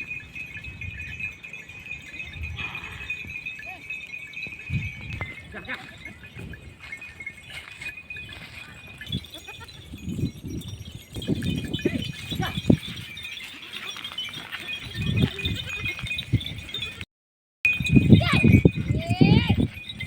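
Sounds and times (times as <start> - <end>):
sheep and goats bleating: 9.2 - 10.0, 13.4 - 14.1.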